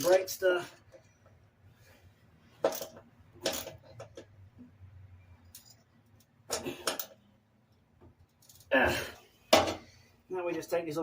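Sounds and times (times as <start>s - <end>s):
metal tools clinking: 5.4s - 7.2s.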